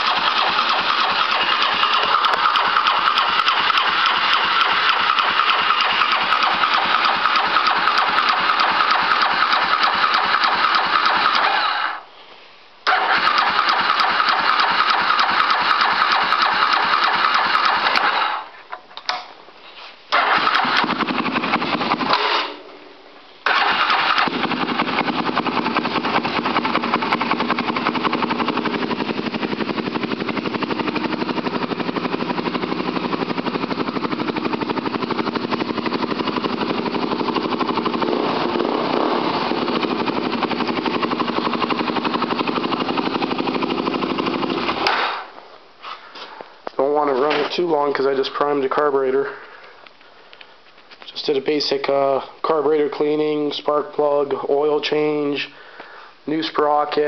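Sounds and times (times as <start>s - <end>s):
atv engine starting and running: 0.0s - 12.0s, 12.9s - 18.5s, 20.1s - 22.8s, 23.4s - 45.2s.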